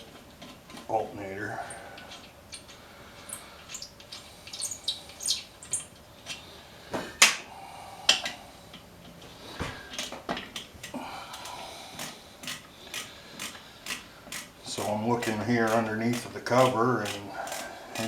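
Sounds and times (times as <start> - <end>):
metallic clicks of hand tools: 9.9 - 18.0.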